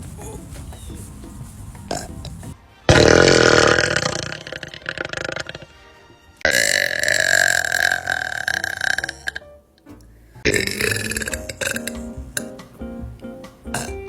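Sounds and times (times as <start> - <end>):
women belching loudly: 2.9 - 5.7, 10.5 - 12.0.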